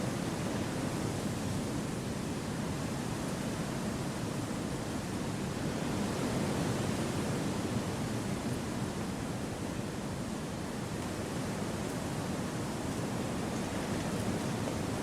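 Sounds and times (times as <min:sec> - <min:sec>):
wind through forest trees: 0:00.0 - 0:15.0.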